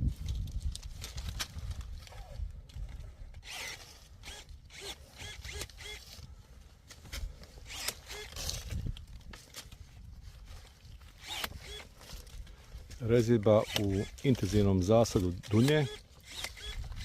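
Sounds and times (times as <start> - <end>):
pruning shears snipping branches: 6.9 - 9.8, 11.0 - 17.0.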